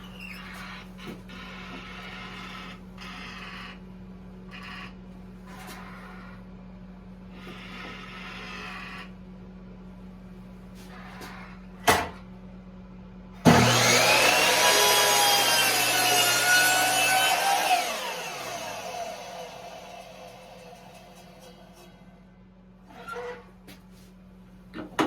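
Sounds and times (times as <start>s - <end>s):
electric saw cutting wood: 13.4s - 21.9s
saw blade winding down: 13.5s - 21.9s.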